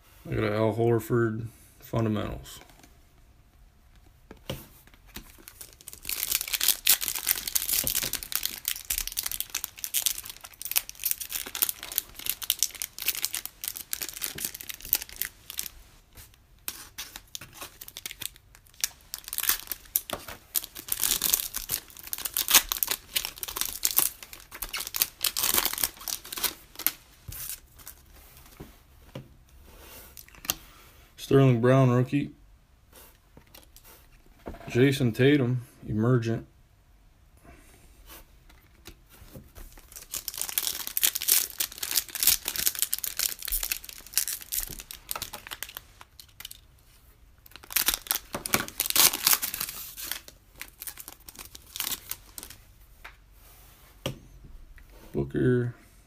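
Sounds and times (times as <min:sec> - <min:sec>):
foil wrappers tearing and crinkling: 0:05.2 - 0:15.8, 0:16.7 - 0:28.5, 0:39.6 - 0:46.6, 0:47.4 - 0:52.6.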